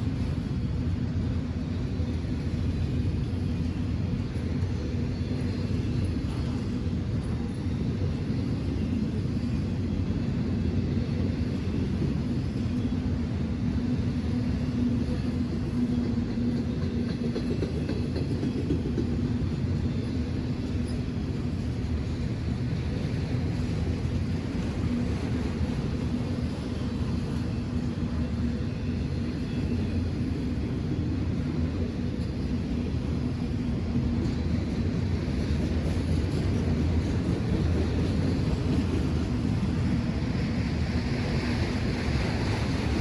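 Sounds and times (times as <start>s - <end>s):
train rolling by: 0.0s - 43.0s.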